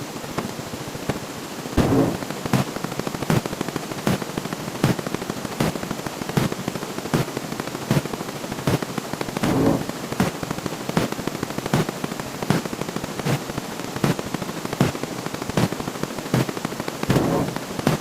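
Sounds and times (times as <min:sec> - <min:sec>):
louder hits: 0:01.8 - 0:02.2, 0:09.4 - 0:09.9
heavy long hit: 0:01.8 - 0:02.3, 0:09.4 - 0:09.9
fast stream of clicks: 0:01.8 - 0:18.0.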